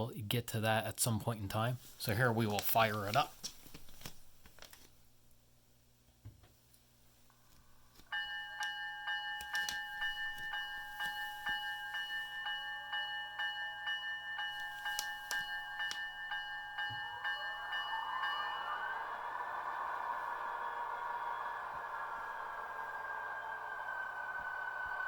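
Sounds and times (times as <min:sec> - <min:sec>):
locomotive bell clanging: 0:08.2 - 0:20.0
rising whine: 0:15.0 - 0:25.0.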